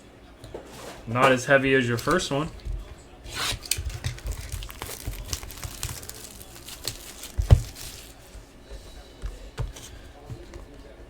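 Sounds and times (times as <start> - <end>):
plastic wrapping crinkling and tearing: 1.9 - 2.6, 3.3 - 8.3.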